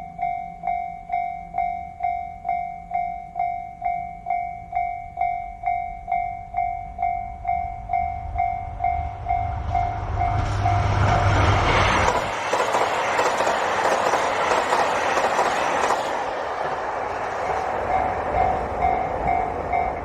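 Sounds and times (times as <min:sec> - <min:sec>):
level-crossing warning bell: 0:00.0 - 0:11.4, 0:17.8 - 0:20.0
diesel train engine rumble: 0:06.4 - 0:20.0
train wheels clattering on rails: 0:08.4 - 0:20.0.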